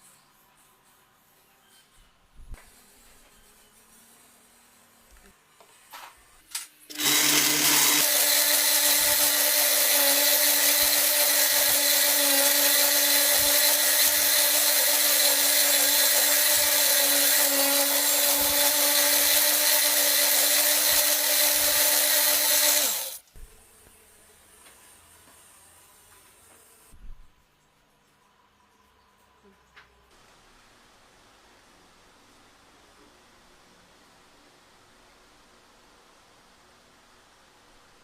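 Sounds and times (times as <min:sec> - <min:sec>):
electric wood sander running: 0:06.9 - 0:23.2.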